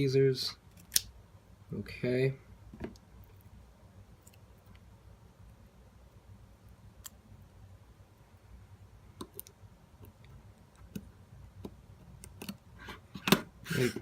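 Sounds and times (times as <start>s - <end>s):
faint low hum: 0.0s - 14.0s.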